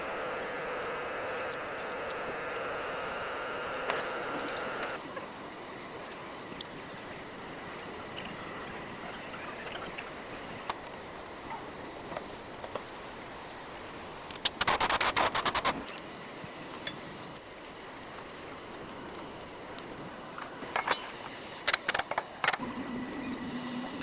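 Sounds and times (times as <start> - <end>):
fast run of sharp clicks: 14.2 - 16.0.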